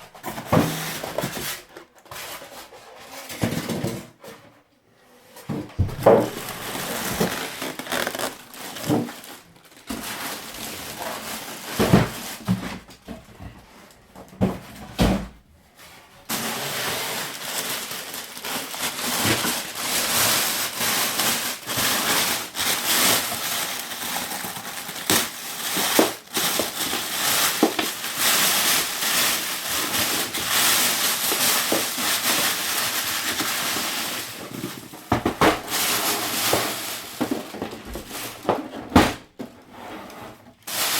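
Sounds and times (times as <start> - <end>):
packing material crinkling: 5.8 - 12.5, 16.3 - 38.7, 40.7 - 40.9.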